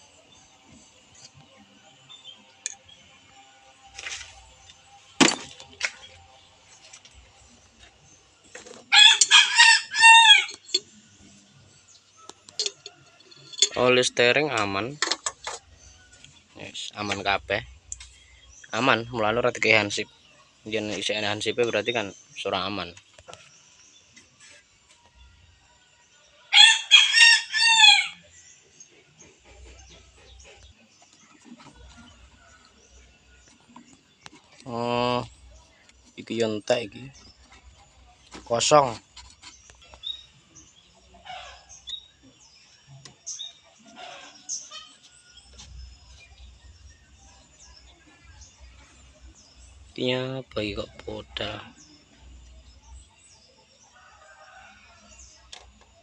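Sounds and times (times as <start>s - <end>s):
rooster crowing: 8.9s - 10.7s, 26.5s - 28.3s.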